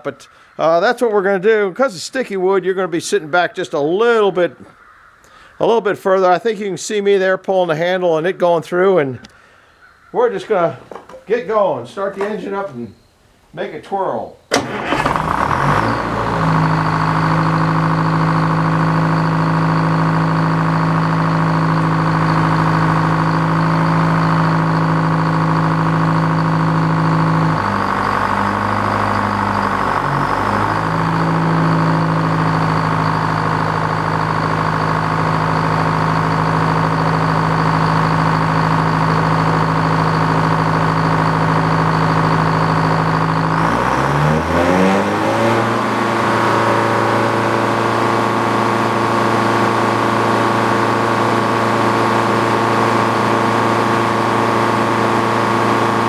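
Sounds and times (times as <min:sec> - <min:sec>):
sawmill engine running: 0:14.5 - 0:56.0.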